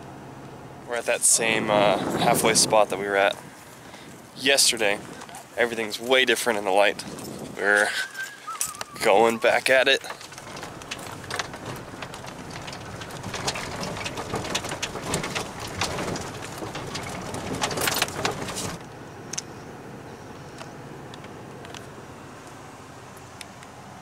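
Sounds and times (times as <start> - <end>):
vehicle engine rumble: 0.0 - 24.0
stones crunching under tyres: 1.4 - 18.8.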